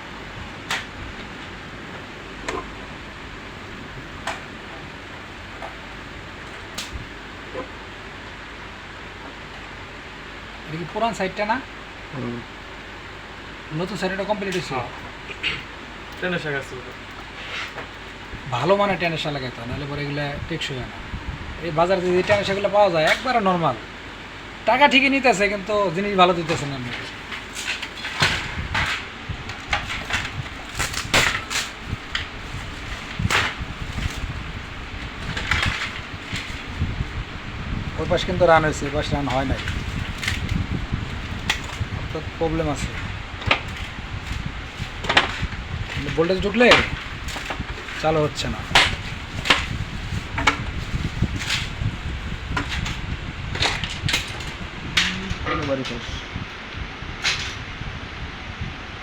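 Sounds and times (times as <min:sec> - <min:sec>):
low steady hum: 0:00.0 - 0:59.0
steady background hiss: 0:00.0 - 0:59.0
scraping handling noises: 0:14.5 - 0:19.3, 0:26.3 - 0:56.4.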